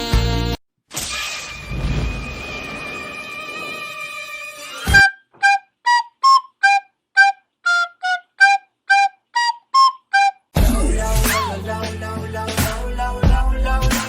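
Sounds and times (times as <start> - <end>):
whistled flute-like tune: 2.9 - 10.6, 11.3 - 11.6
music with a beat: 10.6 - 14.0.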